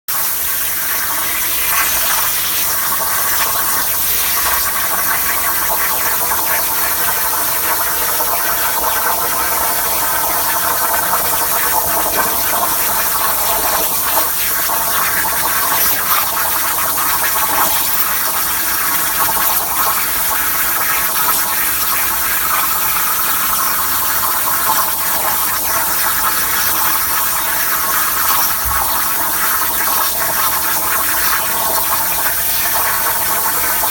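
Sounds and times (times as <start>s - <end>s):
plasma cutter hissing: 0.1s - 5.8s, 9.8s - 22.5s.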